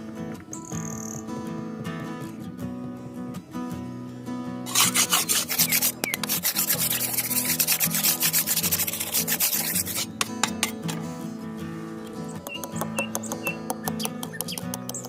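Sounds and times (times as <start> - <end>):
guitar music: 0.0 - 15.0
sandpaper rubbing on wood: 4.7 - 10.1.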